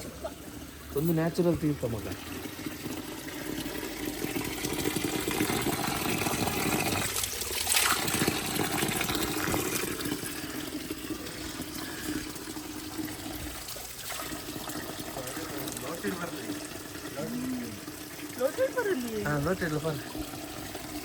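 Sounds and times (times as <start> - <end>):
water running from a spring: 0.0 - 21.0
water splash: 4.4 - 10.2, 13.4 - 14.8.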